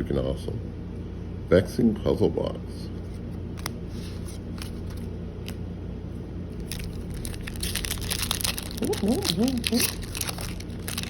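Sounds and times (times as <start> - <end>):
steady low hum: 0.0 - 11.0
foil wrapper crinkling and tearing: 6.6 - 11.0.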